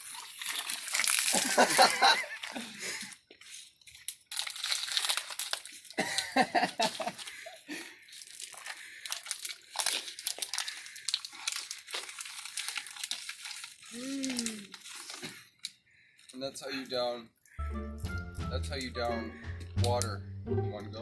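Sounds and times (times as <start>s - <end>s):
plastic water bottle crinkling: 0.0s - 16.4s.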